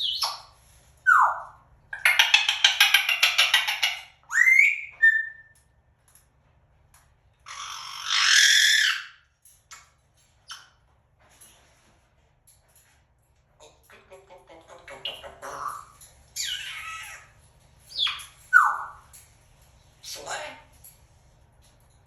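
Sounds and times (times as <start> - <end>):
parrot whistling and squawking: 0.0 - 5.6, 7.5 - 9.8, 15.0 - 19.0
parrot screech: 7.5 - 9.3, 15.7 - 17.4.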